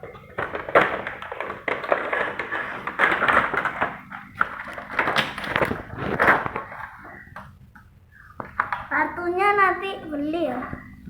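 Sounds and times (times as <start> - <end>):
packaging rustling and scraping: 0.0 - 7.3.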